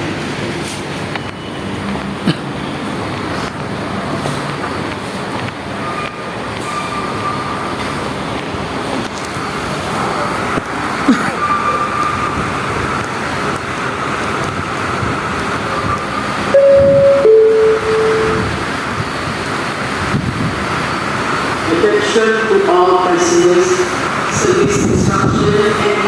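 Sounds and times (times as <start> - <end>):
road traffic: 0.0 - 26.0
faint thin high tones: 16.6 - 18.6.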